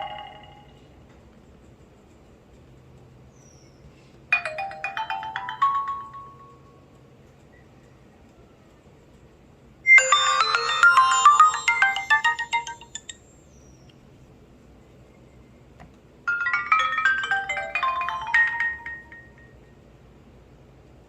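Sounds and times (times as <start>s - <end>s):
phone ringtone melody: 0.0s - 0.9s, 4.4s - 6.8s, 9.9s - 13.1s, 16.3s - 19.6s.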